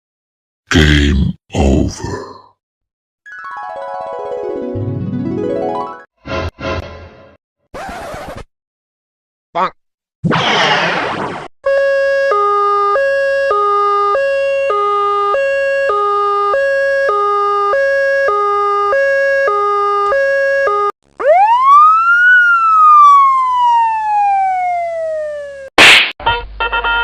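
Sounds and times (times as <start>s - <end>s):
two-tone emergency siren: 11.6s - 25.7s
wailing siren: 11.6s - 25.7s.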